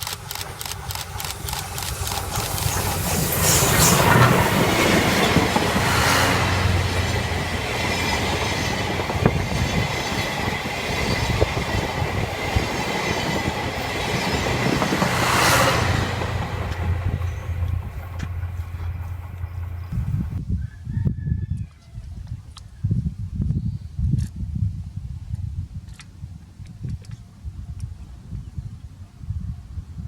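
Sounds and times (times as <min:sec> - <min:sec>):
train wheels clattering over rail joints: 0:00.0 - 0:20.4.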